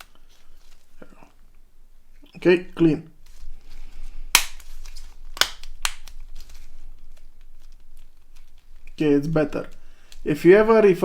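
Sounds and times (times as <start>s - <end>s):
rustling: 0.0s - 1.6s, 3.1s - 10.3s.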